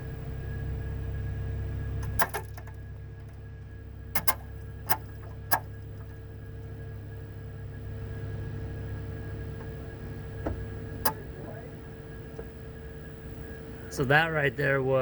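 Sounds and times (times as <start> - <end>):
steady low hum: 0.0 - 15.0
sharp brake clicks: 2.0 - 3.5, 4.1 - 7.2, 10.4 - 11.4.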